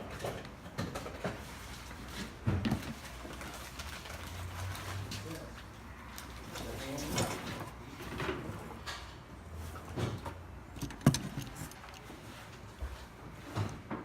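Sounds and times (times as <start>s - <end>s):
objects knocking and clattering: 0.0s - 3.3s, 9.8s - 12.1s.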